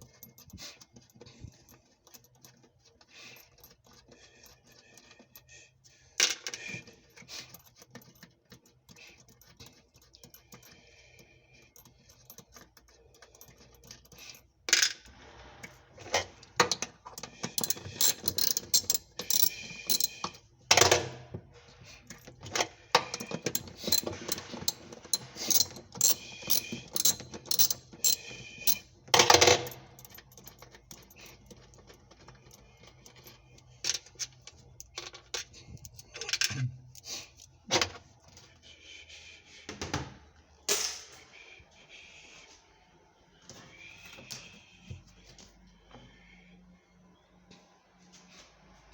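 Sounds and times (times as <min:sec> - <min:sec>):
tools clicking and knocking: 0:06.2 - 0:15.1, 0:16.5 - 0:21.4, 0:22.0 - 0:38.0.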